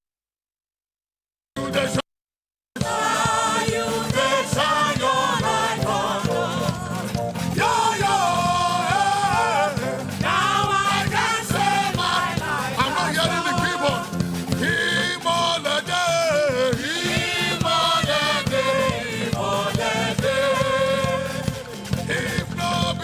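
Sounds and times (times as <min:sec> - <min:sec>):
voices singing together: 0:01.6 - 0:02.0, 0:02.8 - 0:23.0
band accompaniment: 0:02.8 - 0:23.0.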